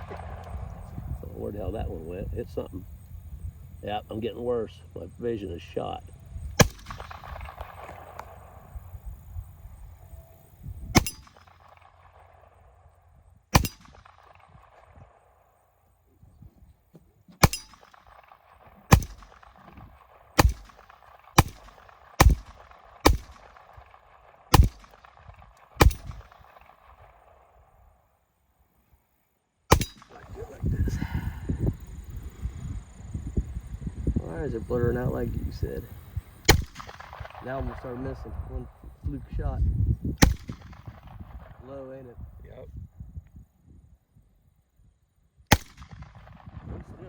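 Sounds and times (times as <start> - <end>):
handgun shots with echo: 6.6 - 8.6, 11.0 - 12.1, 13.5 - 15.0, 17.4 - 27.1, 29.7 - 30.3, 36.5 - 38.0, 40.2 - 41.3, 45.5 - 46.7.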